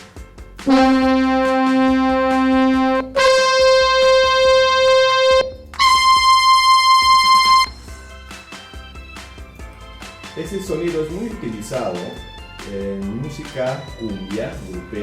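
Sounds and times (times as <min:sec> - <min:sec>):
synth brass held notes: 0:00.6 - 0:07.8.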